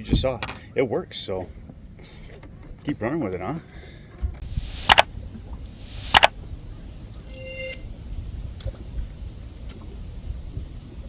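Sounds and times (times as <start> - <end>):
loud sharp noise: 4.5 - 5.1, 5.8 - 6.3
electronic beep: 7.2 - 7.9.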